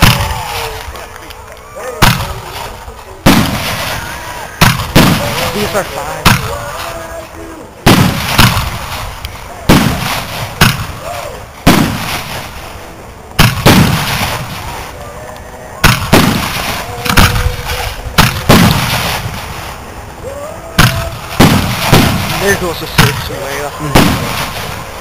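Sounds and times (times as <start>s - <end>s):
firework shells booming: 2.0s - 6.8s, 7.8s - 12.7s, 13.3s - 14.9s, 15.8s - 19.8s, 20.8s - 25.0s.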